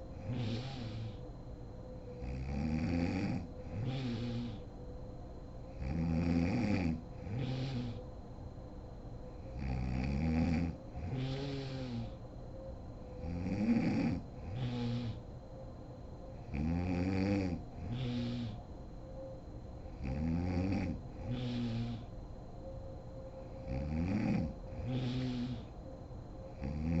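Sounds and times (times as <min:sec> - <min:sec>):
woman snoring loudly: 0:00.2 - 0:01.2, 0:02.2 - 0:04.6, 0:05.8 - 0:08.0, 0:09.6 - 0:12.2, 0:13.2 - 0:15.2, 0:16.5 - 0:18.6, 0:20.0 - 0:22.1, 0:23.6 - 0:25.7, 0:26.6 - 0:27.0.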